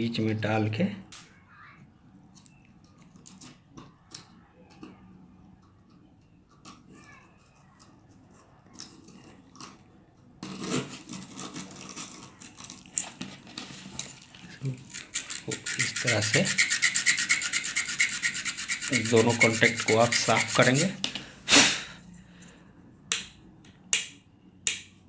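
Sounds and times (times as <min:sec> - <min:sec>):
sandpaper rubbing on metal: 0:14.9 - 0:21.0.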